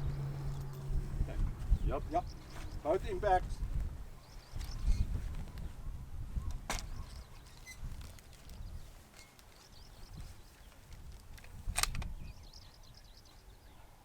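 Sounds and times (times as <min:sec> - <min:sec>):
low outdoor rumble: 0:00.0 - 0:04.2
faint birds chirping: 0:00.0 - 0:14.0
sharp click: 0:11.7 - 0:12.1.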